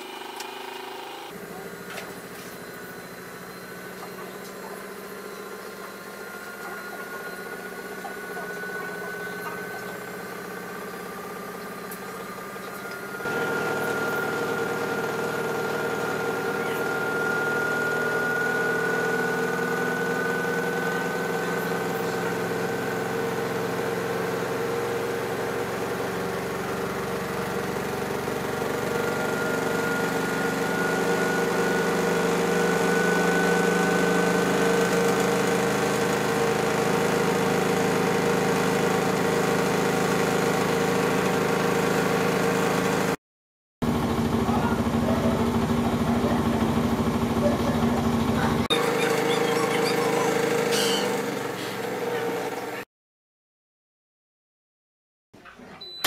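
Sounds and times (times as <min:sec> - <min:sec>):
washing machine drum spinning: 0:43.9 - 0:51.5.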